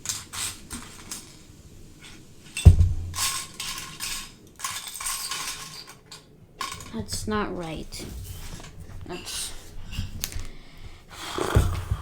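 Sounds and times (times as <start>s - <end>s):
plastic pieces clattering: 0.0s - 10.5s
loud thump: 2.7s - 3.2s.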